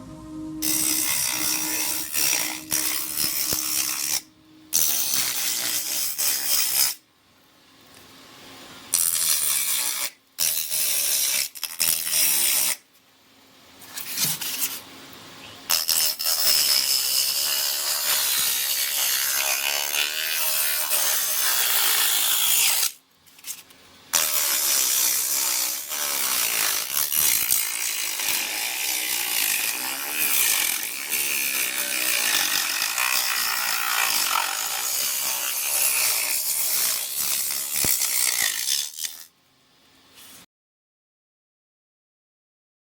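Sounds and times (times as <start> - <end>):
angle grinder cutting: 0.0 - 7.0, 15.7 - 23.0, 24.2 - 39.3.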